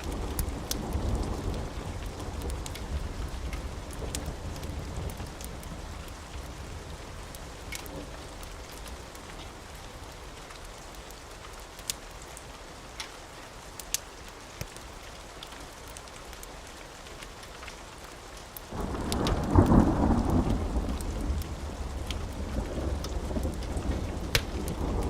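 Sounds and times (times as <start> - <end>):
wood fire crackling pops: 0.0 - 6.5, 7.6 - 8.9, 18.6 - 25.0
steady rain: 0.0 - 25.0.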